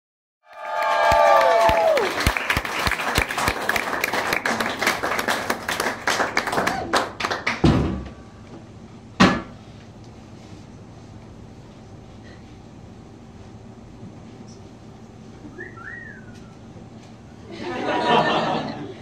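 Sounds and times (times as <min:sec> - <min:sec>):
audience clapping and cheering: 0:00.4 - 0:07.7.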